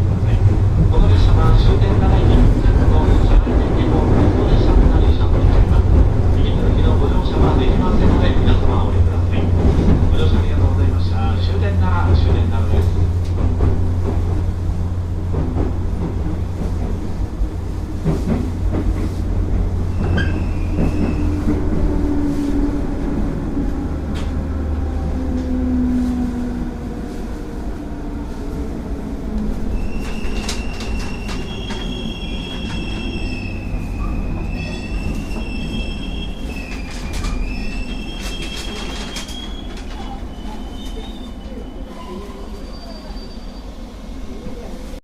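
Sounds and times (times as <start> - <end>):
electric train rumbling: 0.0 - 45.0
rail-joint clicks: 18.0 - 21.8, 29.3 - 41.6
train wheels squealing: 19.8 - 21.5, 29.7 - 43.8.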